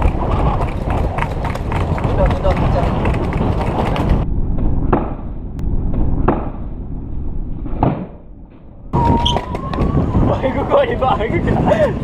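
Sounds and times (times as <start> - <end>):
skateboard wheels rumbling on pavement: 0.0 - 4.2, 9.0 - 12.0.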